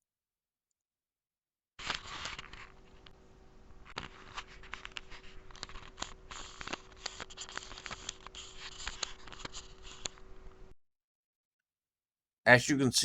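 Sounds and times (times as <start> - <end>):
handling noise rustling and clicks: 1.8 - 3.2, 3.8 - 10.2
faint steady hum: 1.8 - 10.8.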